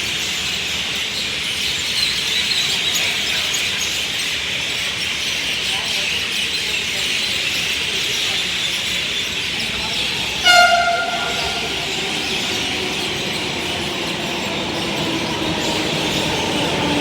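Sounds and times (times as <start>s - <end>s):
train horn toot: 9.6s - 14.0s.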